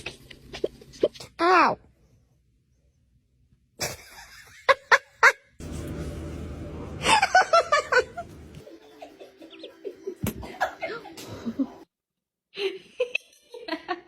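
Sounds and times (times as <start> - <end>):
person laughing: 7.0 - 8.3.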